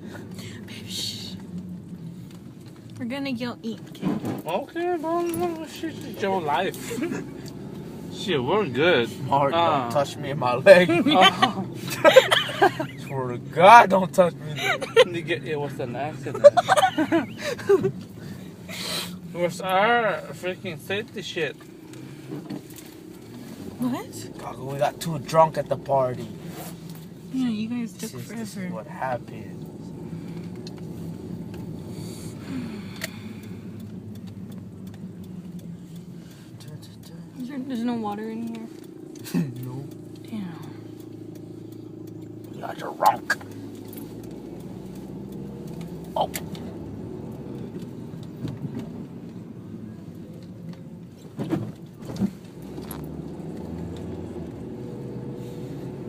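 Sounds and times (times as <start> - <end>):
car cabin road and engine hum: 0.0 - 56.0
light clicks: 32.8 - 49.5.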